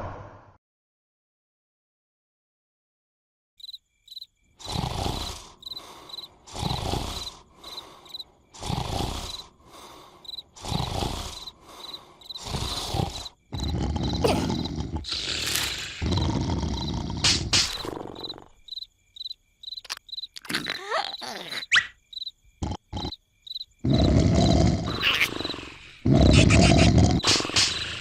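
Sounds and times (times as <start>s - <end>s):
crickets chirping: 3.6s - 28.0s
cartoon snoring: 4.6s - 18.6s, 22.6s - 23.2s, 23.8s - 28.0s.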